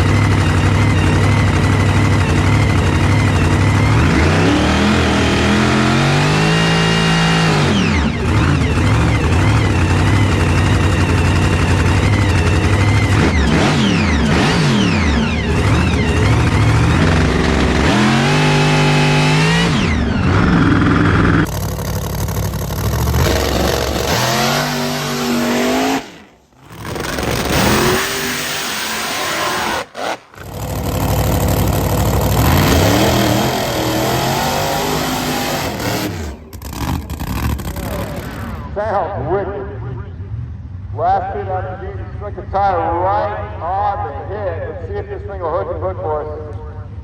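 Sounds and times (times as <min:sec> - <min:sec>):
loud engine revving: 0:00.0 - 0:38.8.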